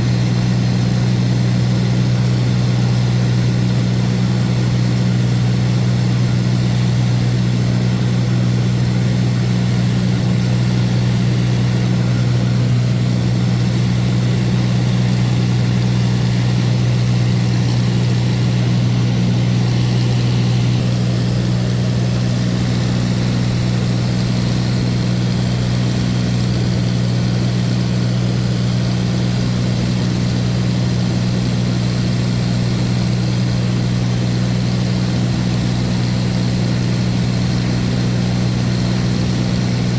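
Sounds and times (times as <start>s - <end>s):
light aircraft engine droning: 0.0s - 39.9s.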